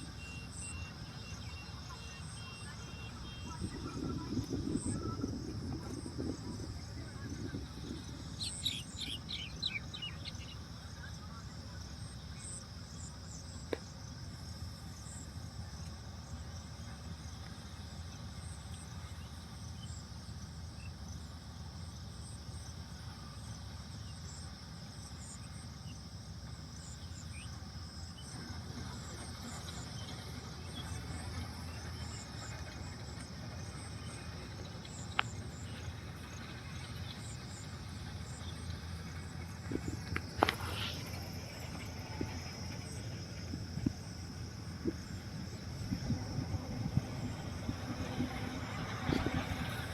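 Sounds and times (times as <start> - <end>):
insects chirping: 0.0 - 49.9
low rumble: 3.1 - 10.0.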